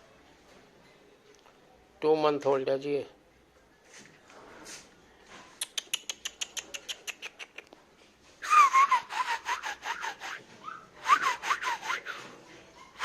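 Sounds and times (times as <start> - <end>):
person tongue clicking: 5.6 - 7.8
kissy whistle pulses: 8.4 - 12.2.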